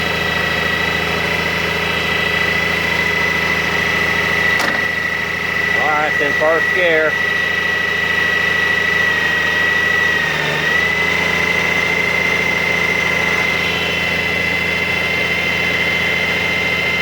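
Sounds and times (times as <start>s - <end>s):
motorcycle engine idling: 0.0s - 9.8s.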